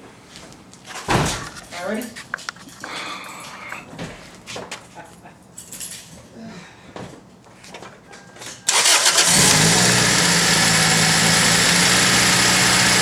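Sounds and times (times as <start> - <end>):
car engine starting and idling: 8.7 - 13.0.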